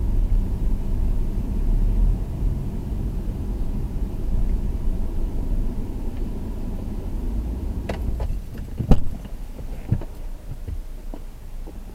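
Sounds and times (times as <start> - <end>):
car rumble from inside cabin: 0.0 - 11.9
sharp knocks: 7.9 - 10.8.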